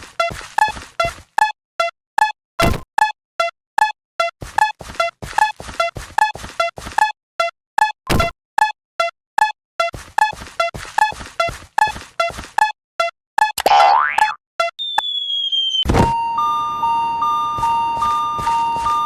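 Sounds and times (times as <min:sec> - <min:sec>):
railroad crossing bell ringing: 0:16.1 - 0:19.0.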